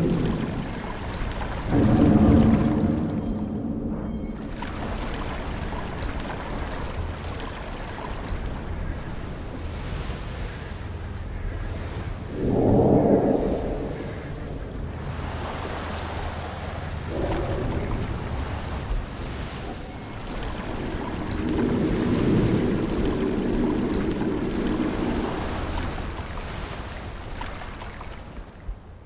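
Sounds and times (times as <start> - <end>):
low droning tone: 0.0 - 6.4
rushing rumbling noise: 0.0 - 9.8, 11.3 - 26.6.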